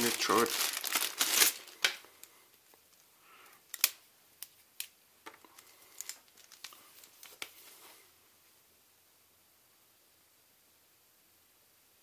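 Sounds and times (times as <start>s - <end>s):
packaging rustling: 0.0s - 2.1s, 5.3s - 7.7s
sharp clicks of cable handling: 3.7s - 7.5s.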